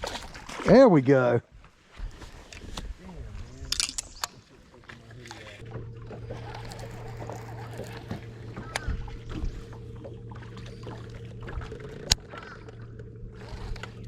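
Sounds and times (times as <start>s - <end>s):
electric motor humming: 5.6s - 14.0s.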